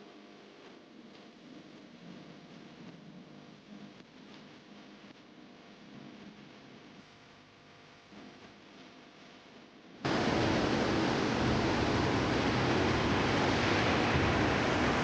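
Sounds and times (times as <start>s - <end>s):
waterfall rushing: 10.1s - 15.0s.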